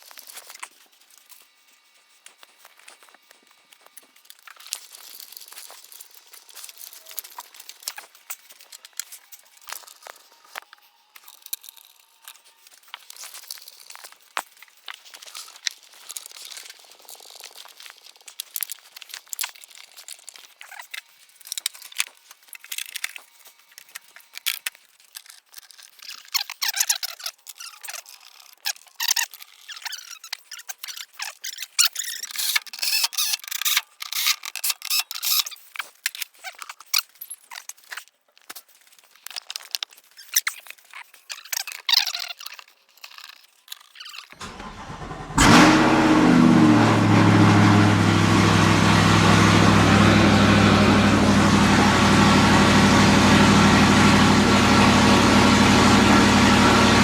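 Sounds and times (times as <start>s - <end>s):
plastic squeaking and scraping: 24.4s - 45.1s.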